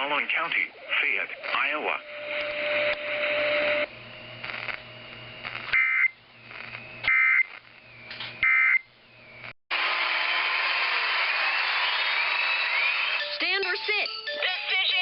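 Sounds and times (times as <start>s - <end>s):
radio broadcast: 0.0s - 9.6s
radio hiss: 0.0s - 9.6s
digital data tone bursts: 5.4s - 9.4s.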